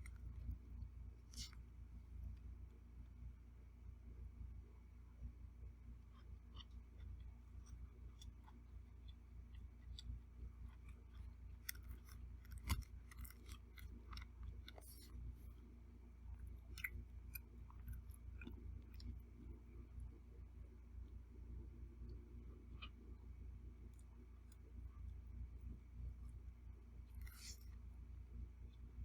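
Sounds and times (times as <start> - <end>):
person chewing: 0.0 - 1.6, 6.1 - 19.8, 27.1 - 27.8
low steady hum: 0.0 - 29.0.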